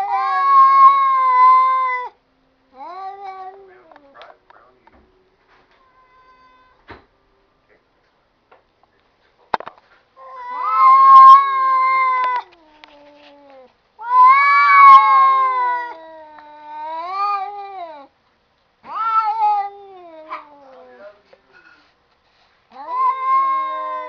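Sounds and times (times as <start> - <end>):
cats yowling: 0.0 - 4.4, 10.2 - 18.1, 18.8 - 21.2, 22.7 - 24.0.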